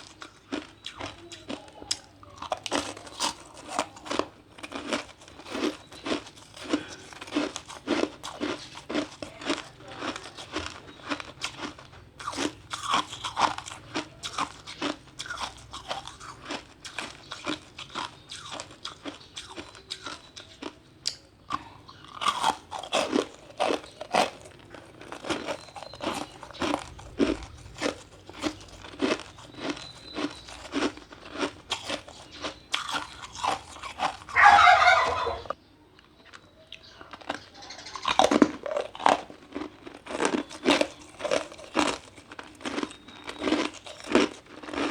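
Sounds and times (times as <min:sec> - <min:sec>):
ice crunched between teeth: 0:00.0 - 0:21.2, 0:22.1 - 0:35.4, 0:38.0 - 0:44.9.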